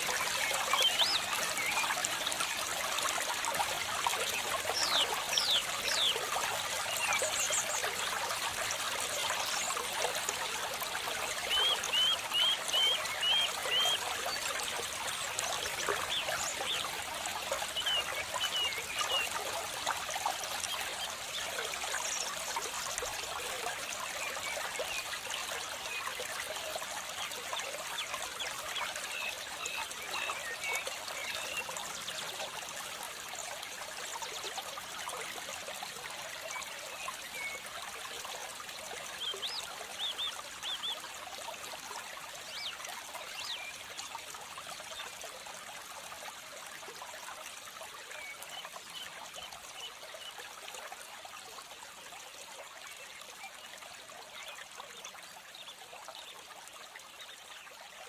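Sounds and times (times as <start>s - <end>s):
water trickling: 0.0s - 58.0s.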